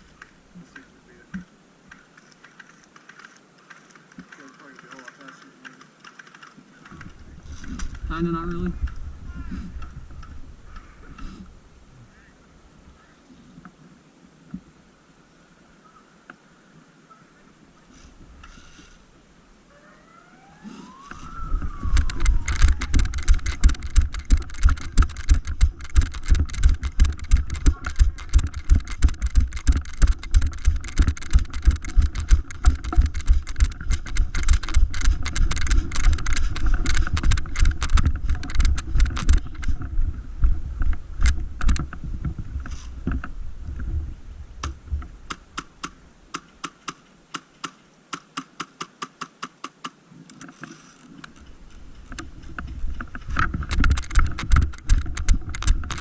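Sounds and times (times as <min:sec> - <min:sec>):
siren tone: 0:19.7 - 0:23.1
running footsteps: 0:20.9 - 0:43.9, 0:51.3 - 0:56.0
gear rattling: 0:21.8 - 0:40.0, 0:51.4 - 0:56.0.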